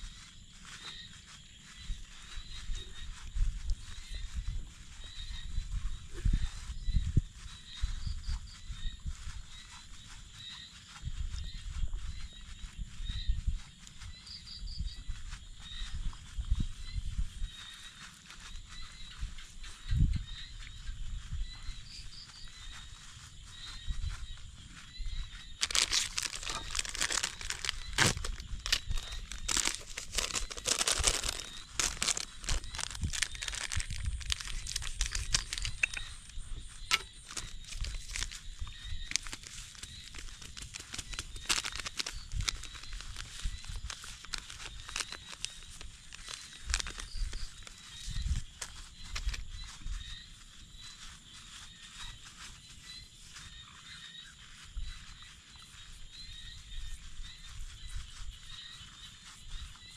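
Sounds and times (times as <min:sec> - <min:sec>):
rustling and crackling clicks: 0:25.5 - 0:49.8.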